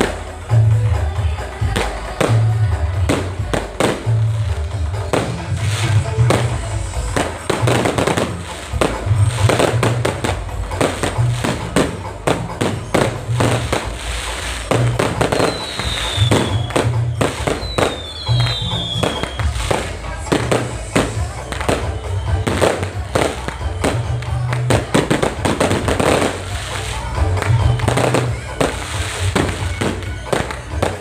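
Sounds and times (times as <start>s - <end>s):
music with pulsing low beat: 0.0s - 31.0s
fireworks bangs: 1.6s - 31.0s
falling fireworks whistles: 3.1s - 31.0s.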